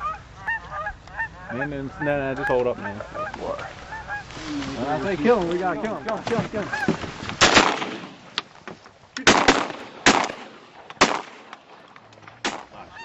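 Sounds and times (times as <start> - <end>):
shotgun shots: 7.4 - 8.3, 9.2 - 12.8.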